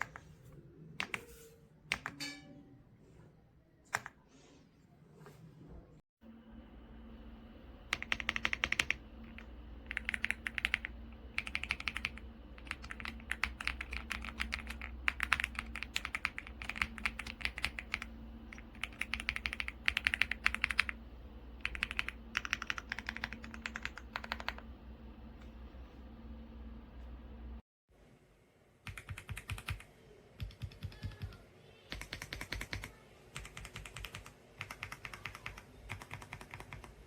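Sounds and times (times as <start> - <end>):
mechanical keyboard typing: 7.9 - 21.0, 21.6 - 24.7, 28.9 - 29.8, 30.4 - 37.0.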